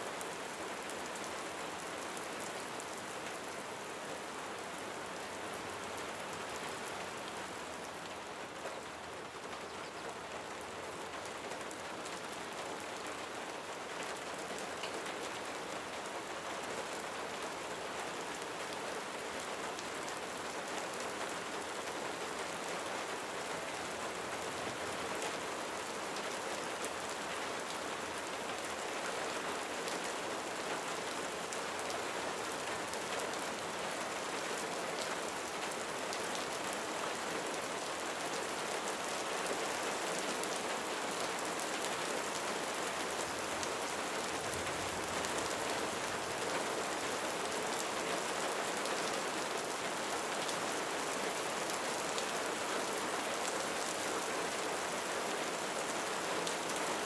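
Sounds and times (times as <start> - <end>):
rain on a roof: 0.0 - 57.0.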